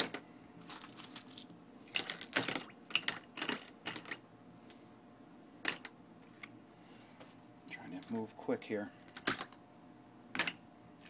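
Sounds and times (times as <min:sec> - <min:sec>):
metal parts clinking: 0:00.6 - 0:04.2, 0:07.7 - 0:08.4, 0:09.1 - 0:09.6.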